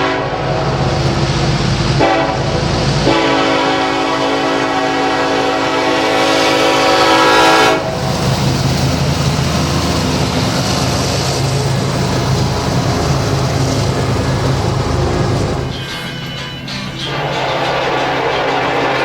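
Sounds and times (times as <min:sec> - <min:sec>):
locomotive horn chord: 0:00.0 - 0:00.8, 0:02.0 - 0:08.0, 0:14.7 - 0:19.0
train rumble and rail noise: 0:00.0 - 0:19.0.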